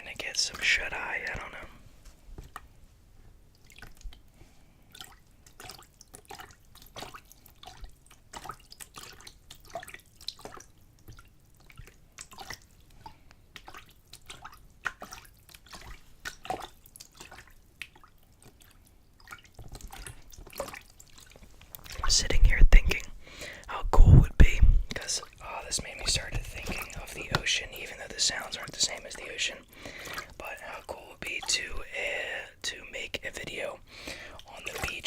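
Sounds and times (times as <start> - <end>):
water sloshing in a container: 3.5 - 31.9, 33.4 - 35.0.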